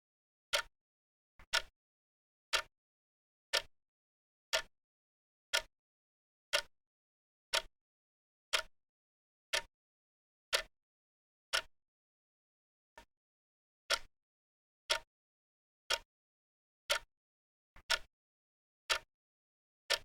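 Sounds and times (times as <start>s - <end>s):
timer ticking: 1.5s - 1.7s, 7.5s - 7.7s, 17.8s - 18.1s.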